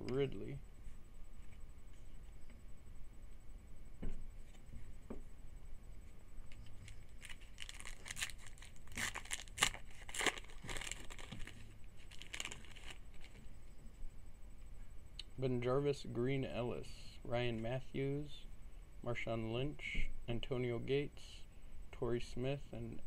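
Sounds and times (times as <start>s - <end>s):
wrapper tearing and crinkling: 6.8s - 13.4s.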